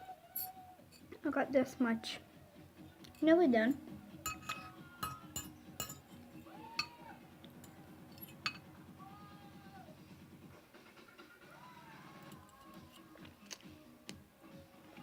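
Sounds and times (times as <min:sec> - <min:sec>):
cutlery clinking against bowl: 0:04.2 - 0:07.0, 0:07.6 - 0:08.7, 0:12.2 - 0:13.6.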